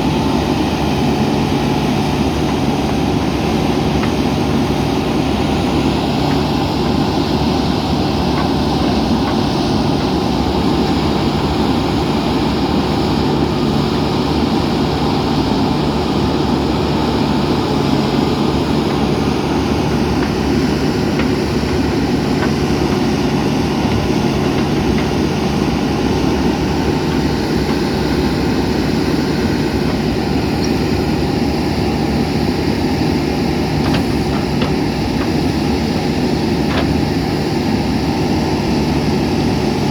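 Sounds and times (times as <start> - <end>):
diesel engine running: 0.0 - 39.9.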